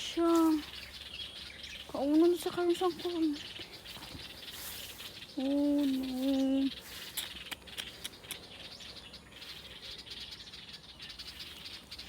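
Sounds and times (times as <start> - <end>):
birds chirping: 0.0 - 12.0
sharp clicks: 7.1 - 8.5.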